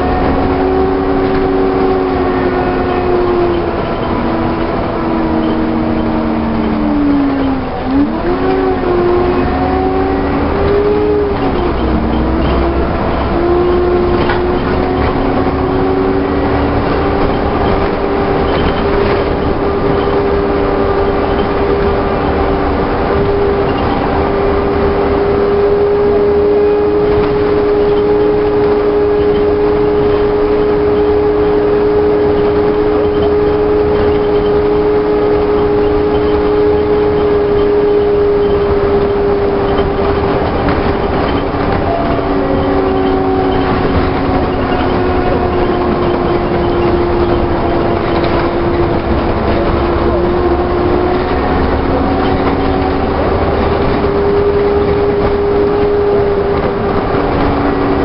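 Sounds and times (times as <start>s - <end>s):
bus engine and driveline whine: 0.0s - 58.0s
low even rumble: 37.3s - 58.0s.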